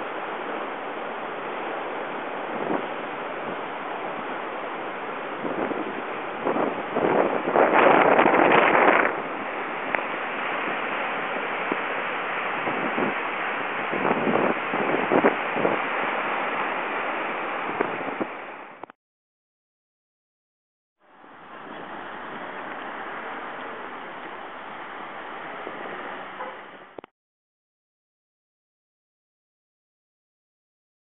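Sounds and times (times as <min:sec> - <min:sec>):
wind buffeting microphone: 0:00.0 - 0:18.7
river rushing: 0:00.0 - 0:18.9, 0:21.0 - 0:27.0.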